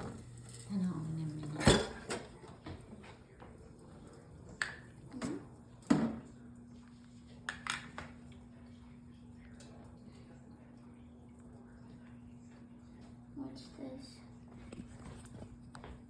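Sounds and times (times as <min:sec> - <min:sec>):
pot and dishes clattering: 0:01.4 - 0:03.2, 0:04.6 - 0:06.3.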